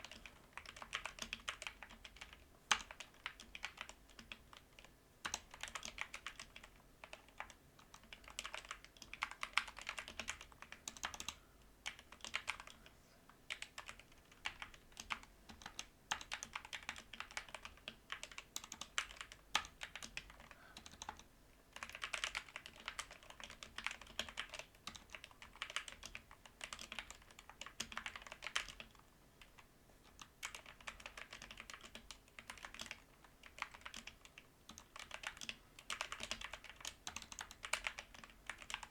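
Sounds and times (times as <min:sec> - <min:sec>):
mechanical keyboard clacking: 0:21.8 - 0:29.5, 0:30.2 - 0:38.9.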